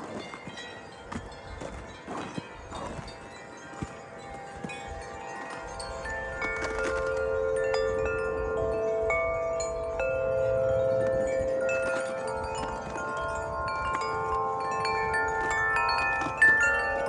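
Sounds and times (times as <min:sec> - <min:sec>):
metal wind chimes ringing: 0:00.0 - 0:17.0
low wind rumble: 0:04.1 - 0:17.0.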